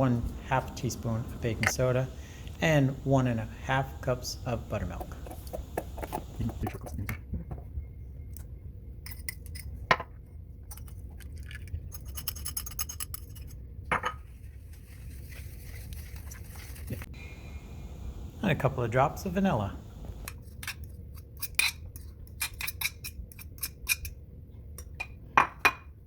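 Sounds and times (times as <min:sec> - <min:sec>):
utensil scraping a mixing bowl: 0:04.5 - 0:06.9.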